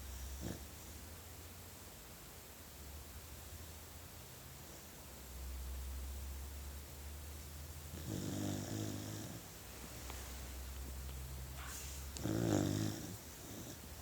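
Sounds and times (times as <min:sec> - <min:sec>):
puppy snoring: 0:00.0 - 0:01.0, 0:07.9 - 0:09.6, 0:11.6 - 0:14.0.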